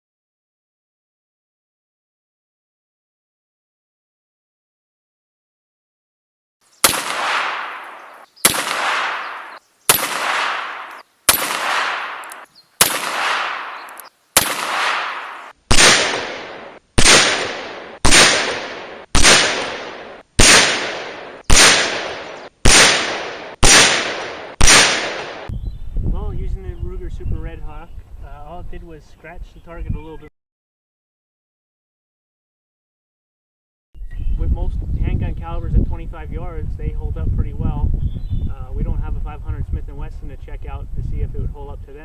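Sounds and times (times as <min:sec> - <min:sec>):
loud revolver shots with echo: 0:06.8 - 0:25.5.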